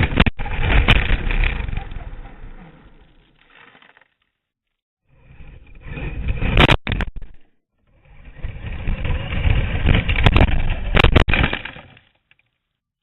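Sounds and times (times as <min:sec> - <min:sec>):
rc truck motors rumbling: 0:05.1 - 0:12.5.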